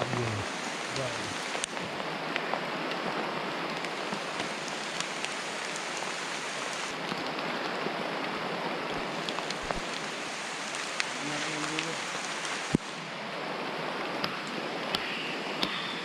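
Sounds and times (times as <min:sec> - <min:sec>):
raindrops ticking: 0:00.0 - 0:03.0, 0:03.7 - 0:07.7, 0:08.9 - 0:13.0
steady rain hiss: 0:00.0 - 0:16.0.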